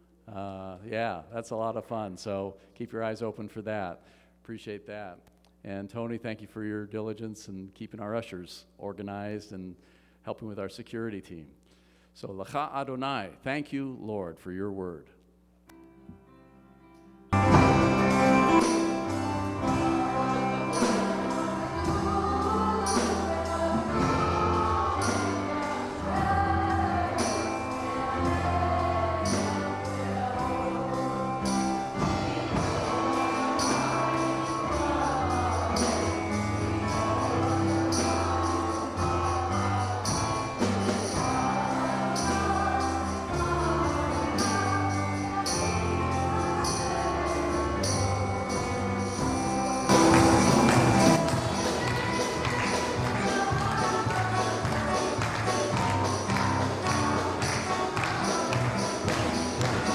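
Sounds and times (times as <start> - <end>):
jingling percussion: 17.4 - 59.9
voices singing over a band: 17.4 - 59.9.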